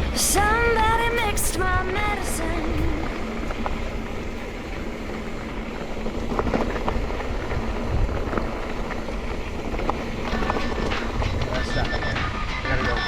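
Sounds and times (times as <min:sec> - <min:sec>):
bike tyres rumbling on dirt: 0:00.0 - 0:13.0
wind on camera: 0:00.0 - 0:13.0
bike knocks and rattles: 0:03.4 - 0:13.0.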